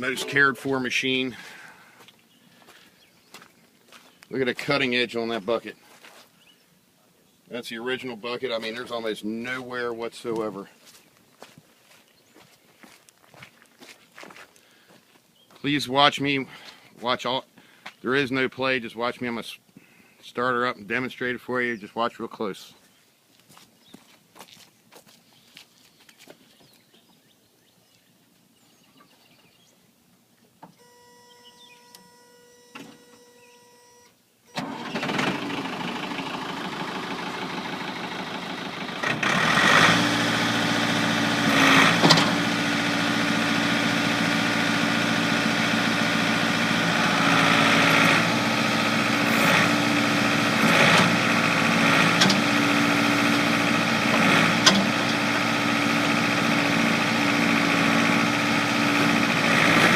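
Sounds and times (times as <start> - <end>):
diesel engine cranking and running: 34.5 - 59.9.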